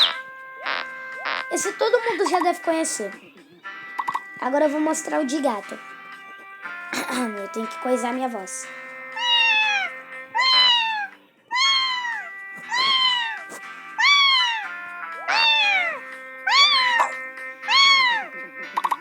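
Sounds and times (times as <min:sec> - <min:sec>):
background music with held tones: 0:00.0 - 0:19.0
person meowing like a cat: 0:09.2 - 0:14.7, 0:15.3 - 0:18.3.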